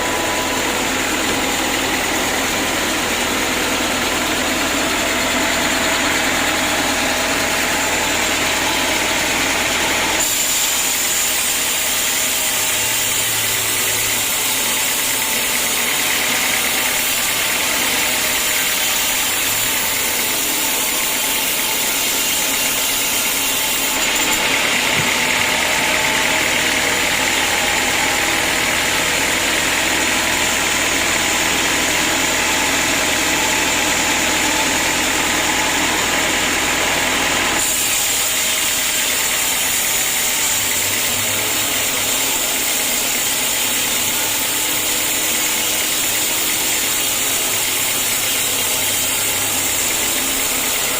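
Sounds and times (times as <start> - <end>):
sawmill saw and machinery running: 0.0 - 50.9.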